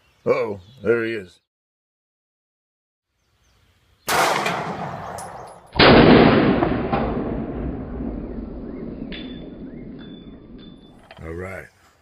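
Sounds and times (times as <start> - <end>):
pistol shots echoing: 4.1 - 11.0.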